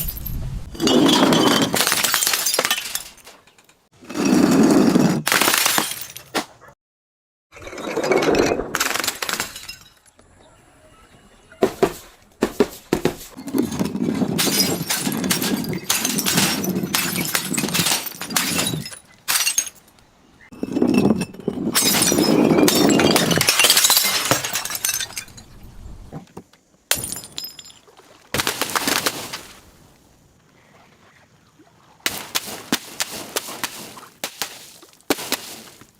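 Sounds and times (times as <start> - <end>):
glass crunching and cracking: 13.5 - 20.0, 21.3 - 25.6.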